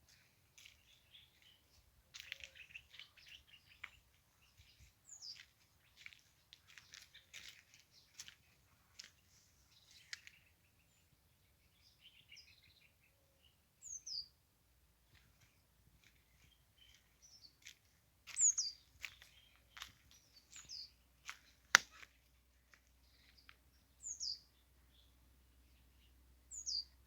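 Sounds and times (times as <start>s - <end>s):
small songbirds chirping: 0.0s - 27.0s.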